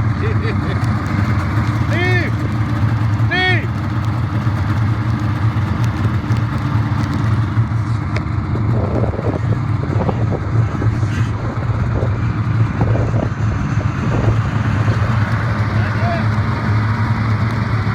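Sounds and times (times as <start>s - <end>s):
vehicle engine humming: 0.0s - 17.9s
wind buffeting microphone: 8.4s - 15.7s.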